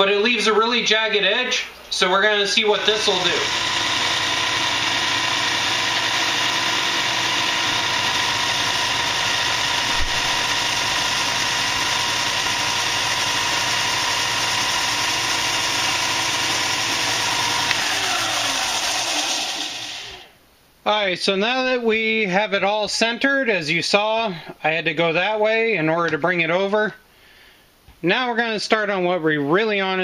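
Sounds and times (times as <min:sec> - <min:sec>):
sander motor humming: 0:02.4 - 0:20.3.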